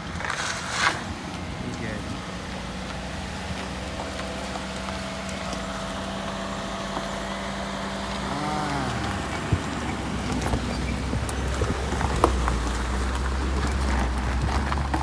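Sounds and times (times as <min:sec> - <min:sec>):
vehicle engine idling: 0:00.0 - 0:15.0.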